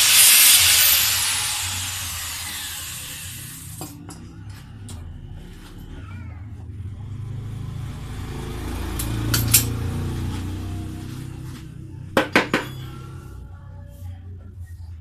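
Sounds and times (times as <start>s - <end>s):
metal tools clinking: 9.0s - 9.8s, 12.4s - 13.1s.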